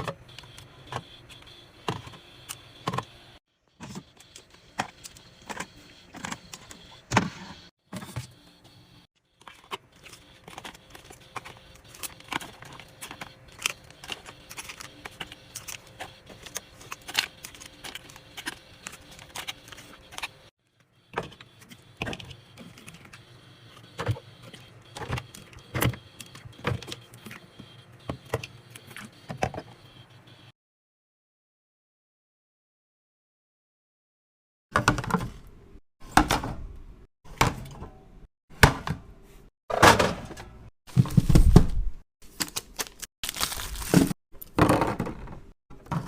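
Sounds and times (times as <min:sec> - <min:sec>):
containers being handled and set down: 0:39.7 - 0:41.7.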